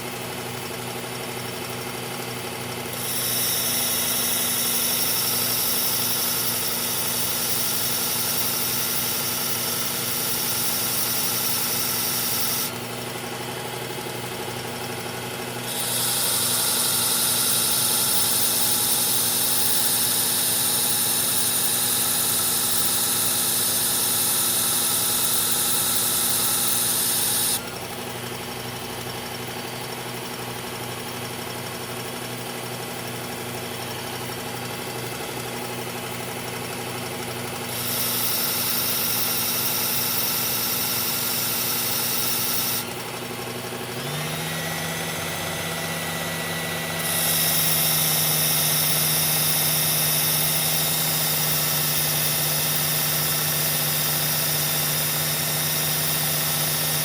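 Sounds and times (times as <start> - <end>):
knife sharpener motor hum: 2.7 - 29.6, 31.2 - 57.0
blade grinding hiss: 3.0 - 12.8, 15.6 - 27.7, 47.0 - 57.0.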